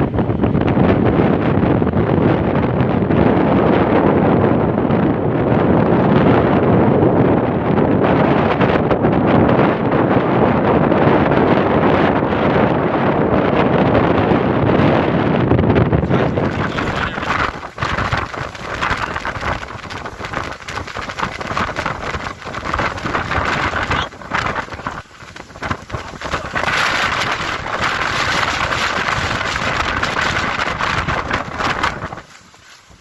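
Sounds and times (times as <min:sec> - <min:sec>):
wind gusting against microphone: 0:00.0 - 0:33.0
waves on a lake: 0:16.0 - 0:33.0.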